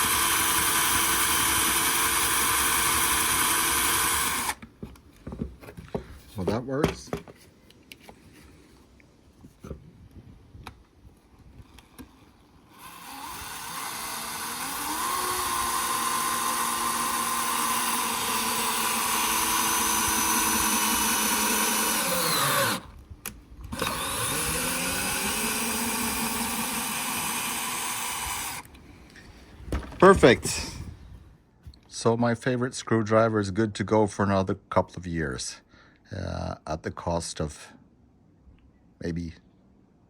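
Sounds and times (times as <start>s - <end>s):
cordless screwdriver whining: 0.0s - 4.6s, 12.7s - 23.0s, 23.7s - 28.8s.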